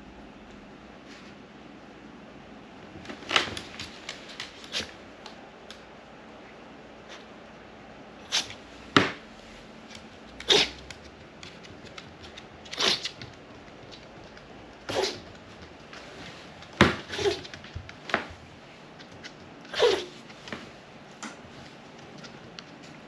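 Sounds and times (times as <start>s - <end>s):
dog sneezing: 8.2s - 8.6s, 10.4s - 10.9s, 12.7s - 13.2s, 14.9s - 15.3s, 17.0s - 17.5s, 19.7s - 20.2s.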